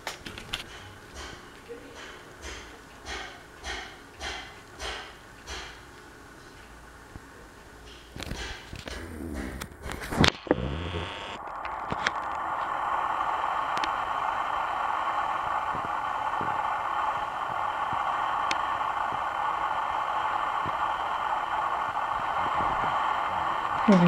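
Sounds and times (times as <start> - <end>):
ceiling fan rushing: 6.2 - 24.0.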